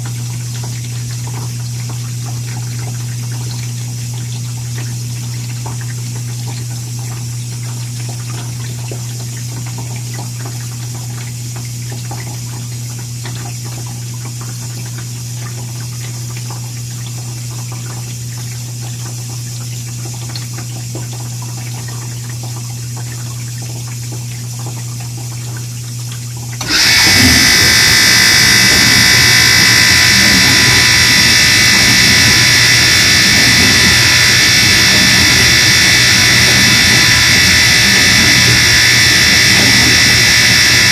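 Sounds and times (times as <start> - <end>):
dishwasher humming: 0.0 - 40.9
high-pitched buzz: 26.6 - 40.9.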